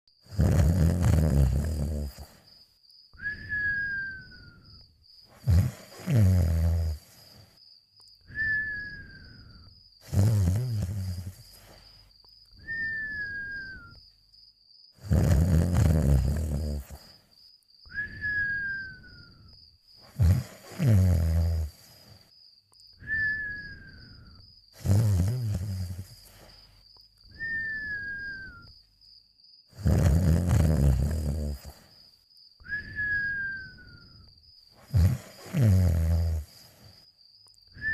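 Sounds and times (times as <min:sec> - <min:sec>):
cartoon snoring: 0:00.2 - 0:02.5, 0:05.3 - 0:07.6, 0:08.3 - 0:13.8, 0:15.0 - 0:17.2, 0:20.0 - 0:22.3, 0:23.0 - 0:26.8, 0:29.7 - 0:32.0, 0:34.8 - 0:37.0.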